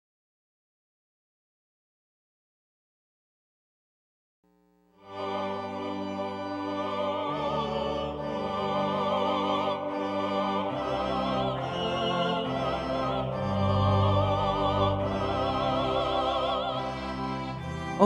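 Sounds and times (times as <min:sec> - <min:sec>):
operatic singing voice: 0:05.1 - 0:18.0
orchestral accompaniment: 0:05.1 - 0:18.0.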